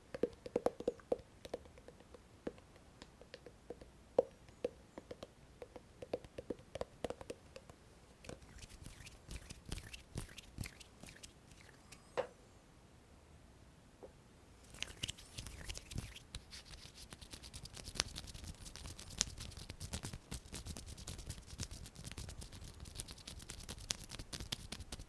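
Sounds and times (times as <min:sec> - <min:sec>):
soft hand clicks and taps: 0:00.0 - 0:12.3
hands rubbing and rustling: 0:06.0 - 0:12.1, 0:14.6 - 0:25.0.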